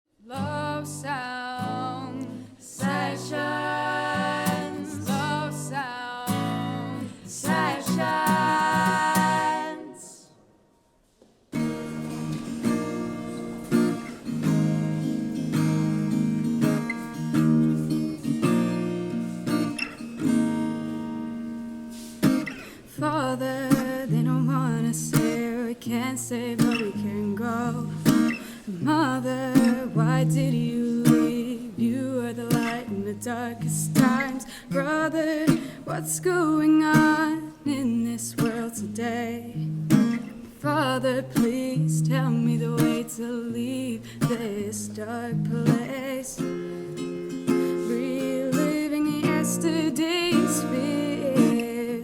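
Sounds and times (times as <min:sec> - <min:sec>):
person singing wordless melody: 0:00.2 - 0:10.4, 0:22.8 - 0:39.7, 0:40.6 - 0:46.7, 0:47.6 - 0:52.0
acoustic guitar chords: 0:00.2 - 0:52.0.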